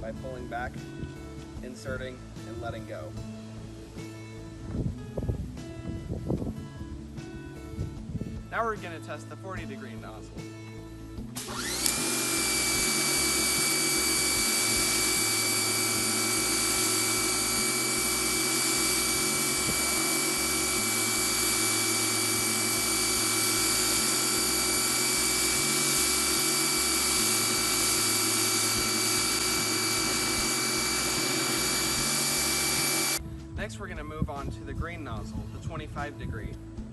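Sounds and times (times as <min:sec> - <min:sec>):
pressure washer motor and pump whine: 0:11.2 - 0:33.2
water hissing from spray nozzle: 0:11.5 - 0:33.2.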